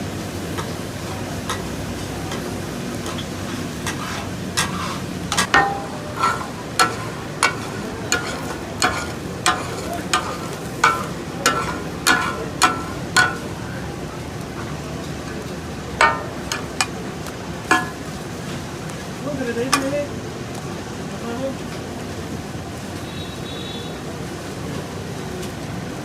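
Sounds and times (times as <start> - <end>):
food sizzling: 0.0 - 23.2
steel spatulas striking a griddle: 2.3 - 13.8, 16.0 - 18.2.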